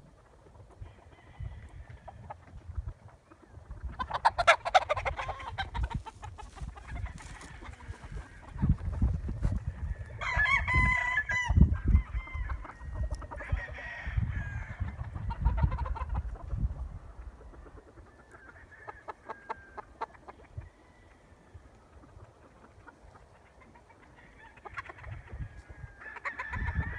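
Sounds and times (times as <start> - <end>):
chickens clucking: 0.0 - 26.9
rooster crowing: 9.9 - 14.9.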